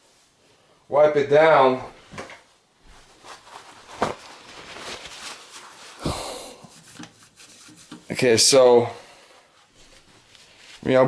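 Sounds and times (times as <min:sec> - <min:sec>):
wiping and rubbing: 0:02.9 - 0:08.7, 0:09.4 - 0:11.0.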